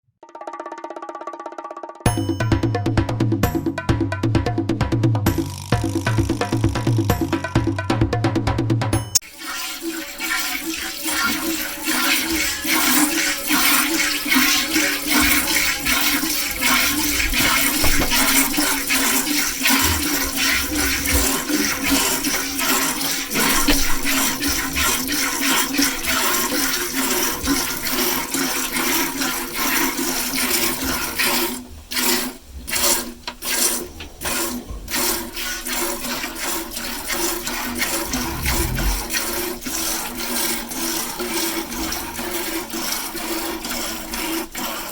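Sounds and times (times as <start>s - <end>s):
milk squirting into a pail: 9.3s - 44.9s.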